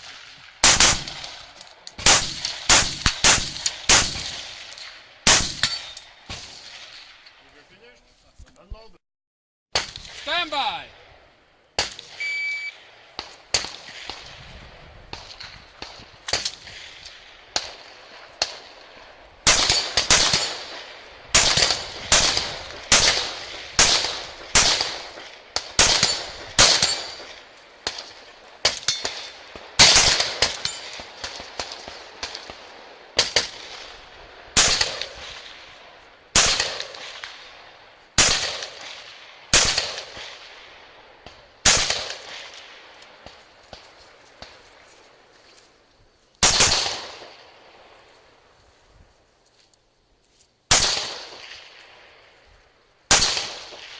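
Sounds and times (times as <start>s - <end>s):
rifle shots with echo: 0.0s - 7.2s, 11.8s - 14.4s, 15.1s - 43.8s, 46.4s - 47.9s, 50.7s - 52.3s, 53.1s - 53.9s
shot timer beep: 12.2s - 12.8s.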